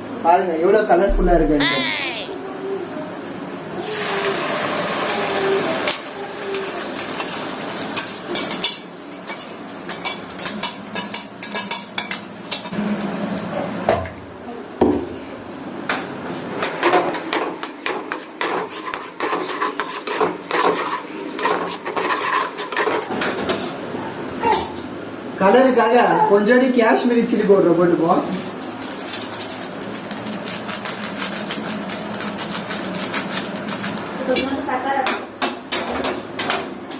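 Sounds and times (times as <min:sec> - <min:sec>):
utensil scraping sauce in a pan: 0:17.2 - 0:23.7, 0:30.4 - 0:34.2.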